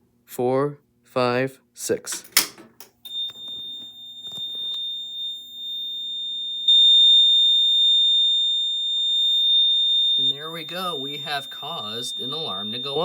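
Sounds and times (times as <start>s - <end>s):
high-pitched alarm tone: 3.1s - 13.0s.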